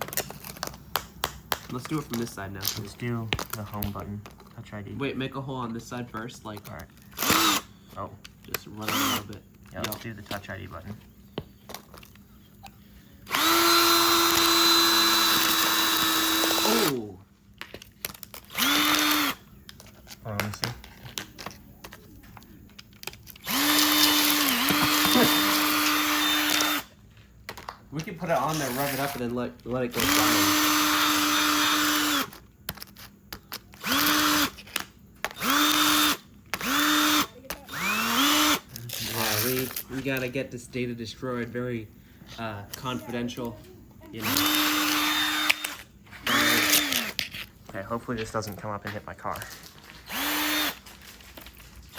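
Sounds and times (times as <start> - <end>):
drill whining: 7.1 - 8.0, 8.8 - 9.9, 13.2 - 17.1, 18.4 - 19.5, 23.3 - 27.0, 28.4 - 32.4, 33.7 - 39.8, 44.1 - 47.4, 49.7 - 50.9.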